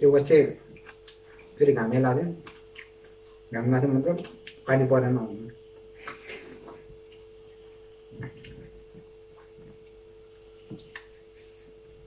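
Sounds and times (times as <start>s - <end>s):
faint steady hum: 0.0s - 12.0s
soft eating noises: 0.3s - 4.8s, 5.4s - 12.0s.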